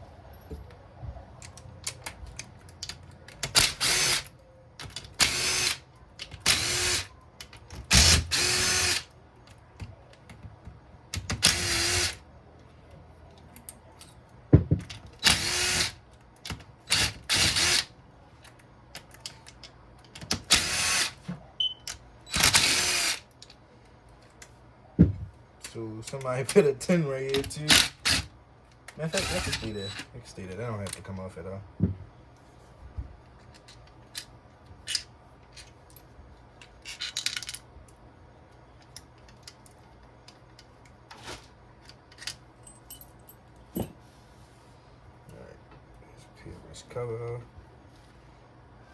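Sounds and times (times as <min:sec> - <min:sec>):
power drill spinning bolts: 0:03.5 - 0:04.3, 0:07.9 - 0:09.0, 0:11.4 - 0:12.2, 0:15.2 - 0:16.0, 0:16.9 - 0:17.9, 0:20.3 - 0:21.2, 0:22.3 - 0:23.2, 0:29.0 - 0:30.1.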